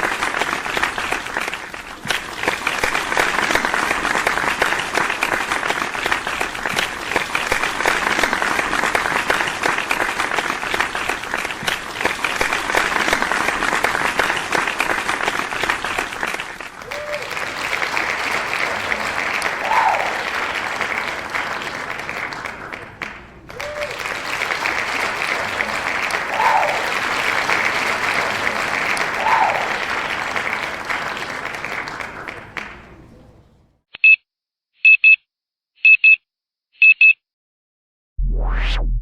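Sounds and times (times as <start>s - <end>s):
crowd applauding: 0.0s - 33.2s
short electronic beeps: 34.0s - 34.2s, 34.8s - 35.2s, 35.8s - 36.2s, 36.8s - 37.2s.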